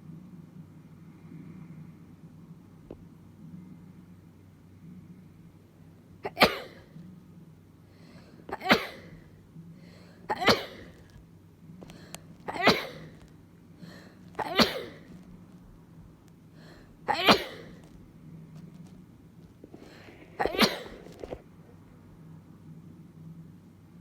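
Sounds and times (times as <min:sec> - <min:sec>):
person sneezing: 0:10.3 - 0:11.0, 0:12.5 - 0:13.2, 0:14.4 - 0:15.0, 0:17.1 - 0:17.8, 0:19.9 - 0:21.3.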